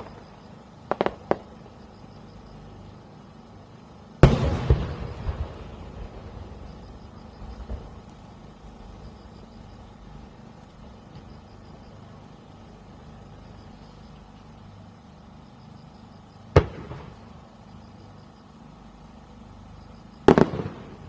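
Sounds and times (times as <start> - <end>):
faint background noise: 0.0 - 21.0
firework bang: 4.2 - 6.3, 16.5 - 17.2, 20.2 - 21.0.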